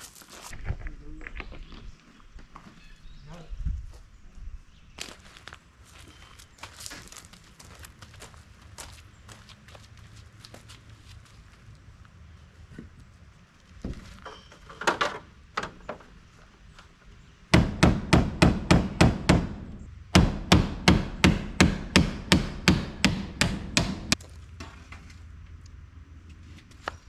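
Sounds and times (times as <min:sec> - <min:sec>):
hammer driving nails into wood: 0:17.6 - 0:24.2.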